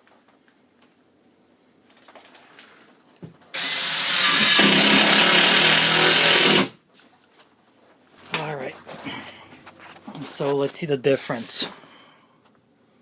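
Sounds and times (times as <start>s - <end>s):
power driver driving screw: 3.6s - 6.8s.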